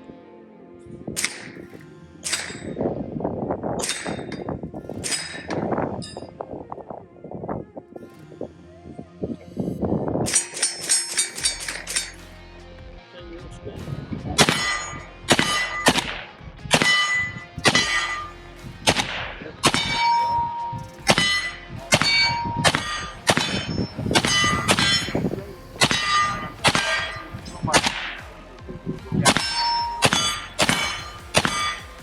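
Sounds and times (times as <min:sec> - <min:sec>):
steel targets ringing: 0:01.2 - 0:02.8, 0:03.8 - 0:06.3, 0:10.3 - 0:12.2, 0:14.4 - 0:28.4, 0:29.2 - 0:32.0
gunfire strikes: 0:13.8 - 0:28.4, 0:29.0 - 0:32.0.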